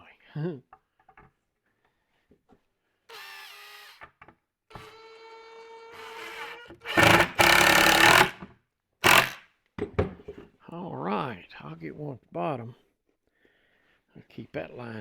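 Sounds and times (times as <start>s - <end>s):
power drill driving screws: 3.1s - 9.4s.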